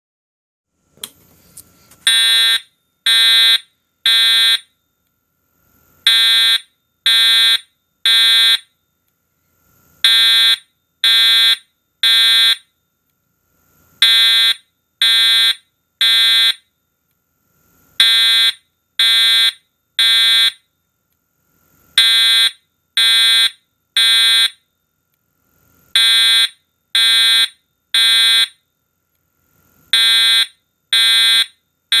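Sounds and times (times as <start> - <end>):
fire alarm horn blasts: 2.0 - 4.7, 6.1 - 8.7, 10.0 - 12.7, 14.0 - 16.6, 18.0 - 20.6, 22.0 - 24.6, 26.0 - 28.6, 29.9 - 32.0.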